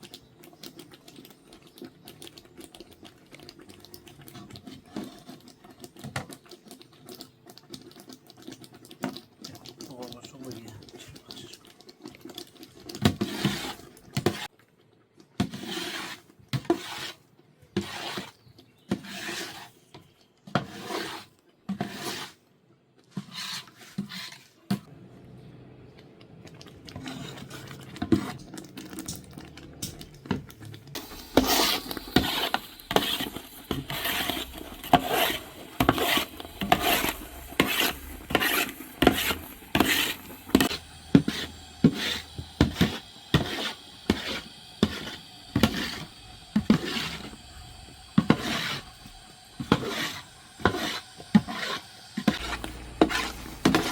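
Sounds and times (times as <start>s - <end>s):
utensil scraping cookware: 17.8s - 19.8s, 26.9s - 53.9s.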